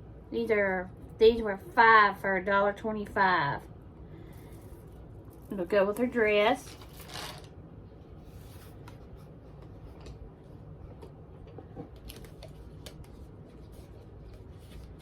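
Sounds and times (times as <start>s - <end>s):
low steady hum: 0.0s - 15.0s
small items handled and packed: 4.3s - 7.5s.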